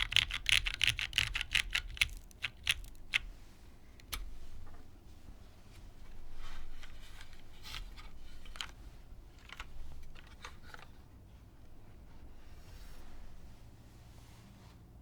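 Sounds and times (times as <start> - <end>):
mechanical keyboard typing: 0.0 - 3.3.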